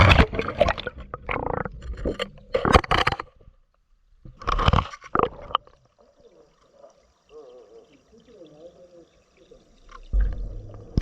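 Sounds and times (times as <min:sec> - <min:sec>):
underwater camera housing scraping: 0:01.0 - 0:03.5, 0:04.3 - 0:05.7.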